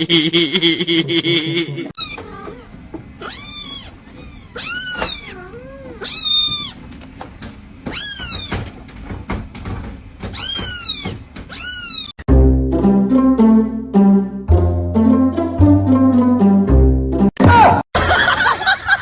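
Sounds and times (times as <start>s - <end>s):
cat meowing: 2.0s - 6.9s, 7.8s - 8.7s, 10.2s - 12.2s.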